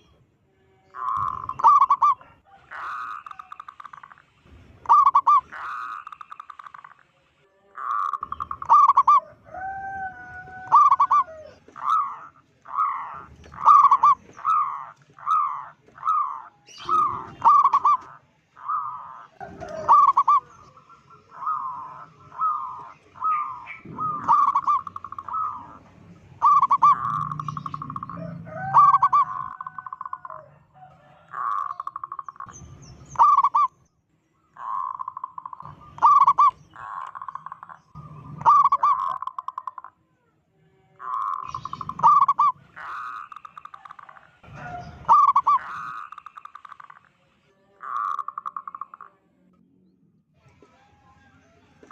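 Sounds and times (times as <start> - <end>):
dove cooing: 1.0 - 4.2, 4.8 - 6.9, 7.8 - 33.7, 34.6 - 39.9, 41.0 - 46.9.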